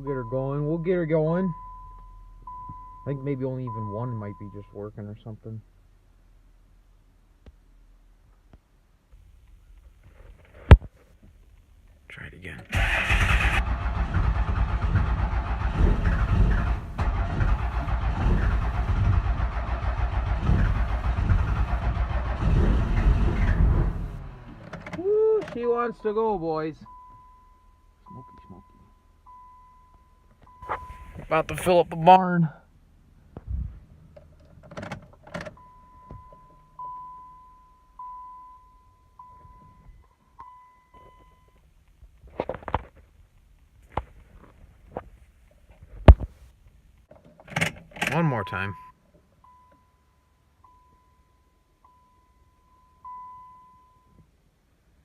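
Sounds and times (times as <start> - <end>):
vehicle warning chime: 0.0 - 4.9, 25.6 - 32.2, 35.5 - 41.6, 48.1 - 54.4
diesel engine cranking on starter: 12.7 - 25.8.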